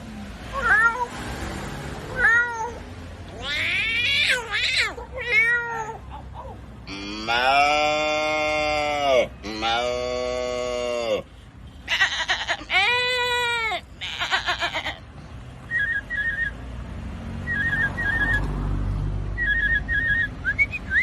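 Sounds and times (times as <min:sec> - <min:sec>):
person mimicking animal calls: 0:06.0 - 0:11.3.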